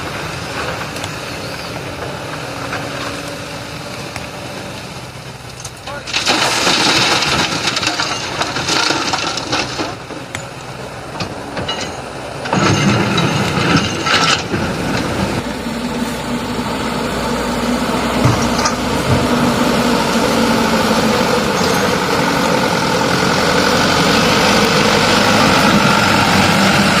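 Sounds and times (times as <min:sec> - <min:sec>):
diesel engine running: 0:00.0 - 0:27.0
sand and stones poured into truck bed: 0:05.6 - 0:10.1.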